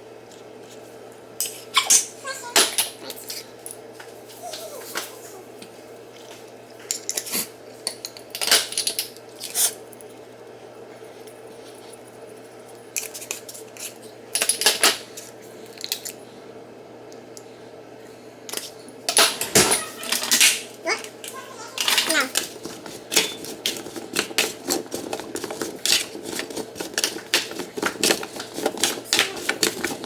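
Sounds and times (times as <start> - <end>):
steady low hum: 0.0 - 30.0
household items clinking: 21.8 - 30.0.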